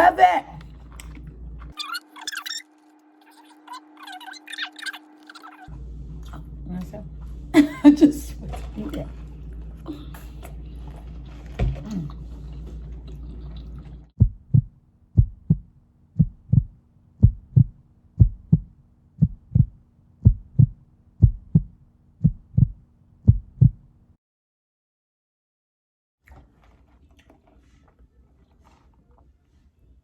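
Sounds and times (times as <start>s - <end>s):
chewing and mouth sounds: 0.5s - 6.6s, 8.5s - 14.1s, 26.2s - 29.6s
heartbeat thumps: 14.2s - 23.9s.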